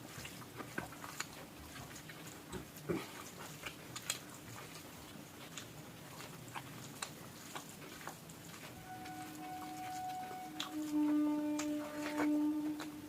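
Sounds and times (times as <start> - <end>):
wet mouth chewing sounds: 0.0 - 13.0
faint steady tone: 8.7 - 13.0.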